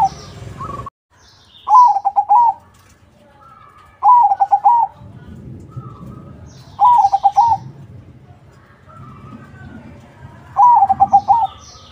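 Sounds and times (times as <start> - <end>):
dove cooing: 1.7 - 2.6, 4.0 - 5.0, 5.6 - 7.8, 10.6 - 11.7.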